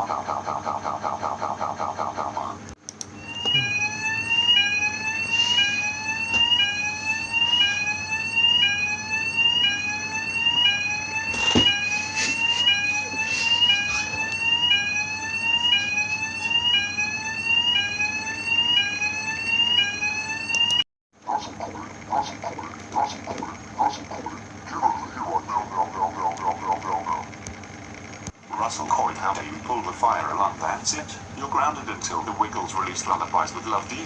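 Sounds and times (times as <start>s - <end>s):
fire alarm whooping tone: 3.2s - 20.9s, 26.0s - 27.4s.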